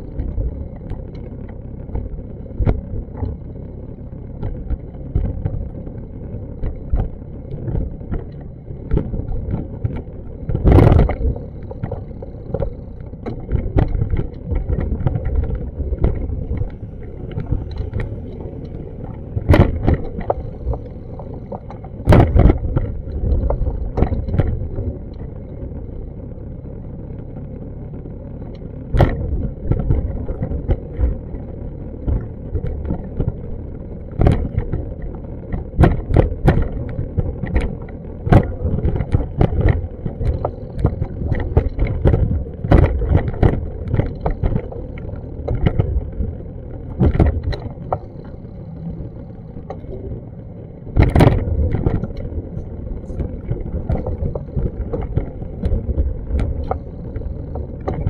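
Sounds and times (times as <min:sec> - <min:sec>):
wind rumble on microphone: 0:00.0 - 0:58.0
knocks and clicks: 0:34.2 - 0:48.4, 0:51.0 - 0:58.0.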